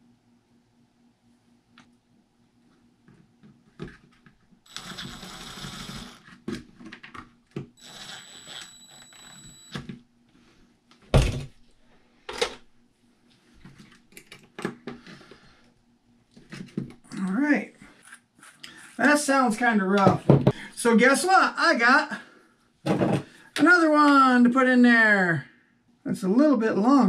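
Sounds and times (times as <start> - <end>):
electric motor whirring: 4.7 - 6.3, 7.8 - 9.8
thin high whine: 7.8 - 10.0
parts knocking on bench: 20.0 - 20.6, 22.9 - 23.3.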